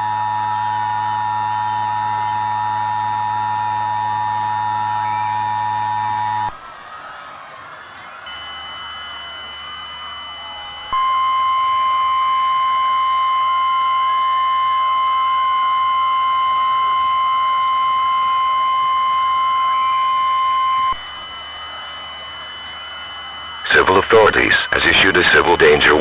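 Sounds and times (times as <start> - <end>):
faint high tones: 0.0 - 7.0, 10.3 - 22.0
loud steady high tone: 0.0 - 7.1, 8.0 - 26.0.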